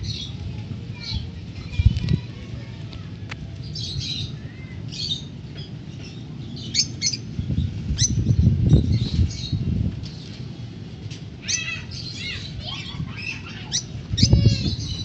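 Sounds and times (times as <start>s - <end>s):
lovebirds chirping and squawking: 0.0s - 0.4s, 3.6s - 10.7s, 11.4s - 15.0s.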